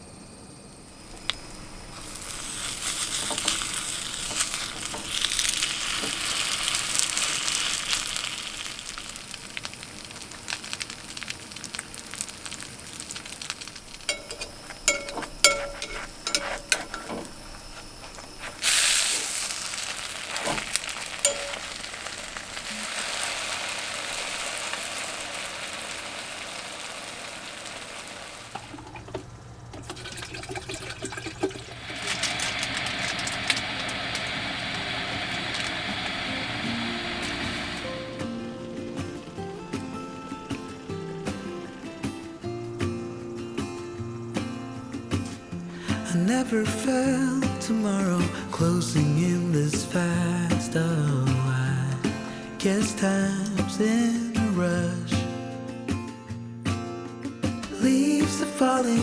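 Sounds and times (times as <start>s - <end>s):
food sizzling in a frying pan: 0.9s - 55.2s
utensil clinking on a pan: 12.0s - 25.7s.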